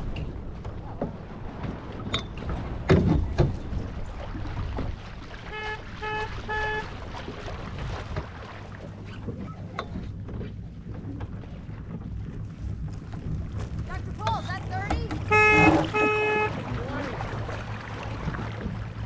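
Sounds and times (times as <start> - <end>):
water washing around boat: 0.0 - 19.0
wind: 0.0 - 19.0
short beeps: 15.3 - 16.6.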